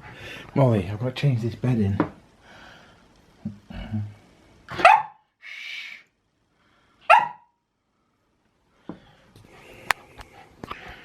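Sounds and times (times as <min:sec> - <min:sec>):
dog barking: 0:04.7 - 0:05.2, 0:07.1 - 0:07.6
soft hissy sound: 0:07.8 - 0:11.0.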